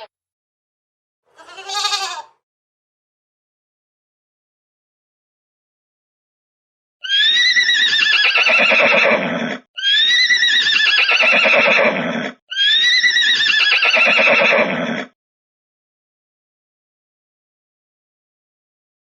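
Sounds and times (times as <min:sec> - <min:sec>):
horse whinny: 0:01.3 - 0:02.4, 0:07.0 - 0:15.2.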